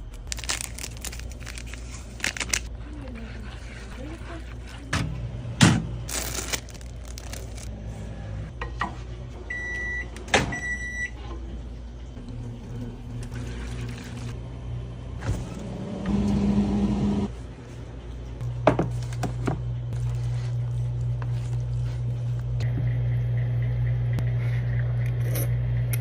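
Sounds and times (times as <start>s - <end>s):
steady electric hum: 0.0s - 10.2s.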